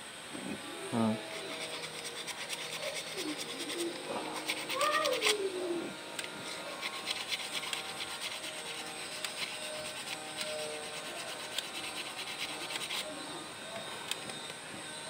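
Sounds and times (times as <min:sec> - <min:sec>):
fine scratching: 0:01.2 - 0:13.1.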